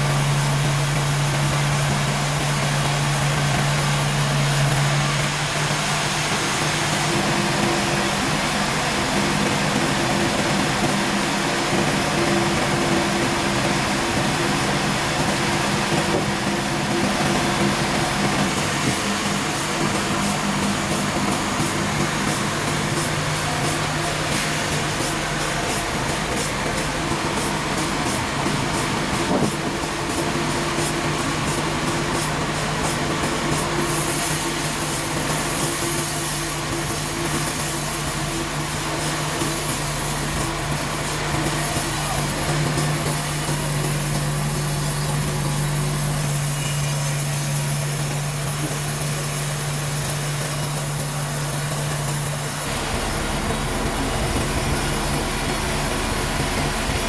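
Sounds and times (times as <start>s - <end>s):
sawmill machinery running: 0.0s - 57.0s
bright high hiss: 33.6s - 57.0s.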